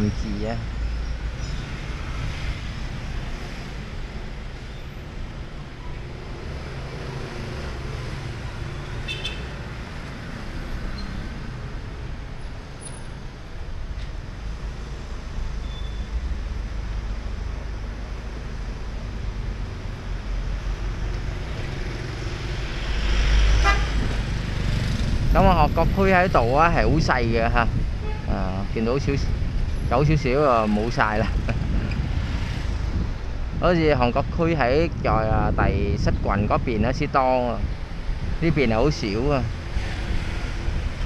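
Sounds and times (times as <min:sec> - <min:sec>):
street traffic rumble: 0:00.0 - 0:41.0
vehicle passing close: 0:19.3 - 0:26.4.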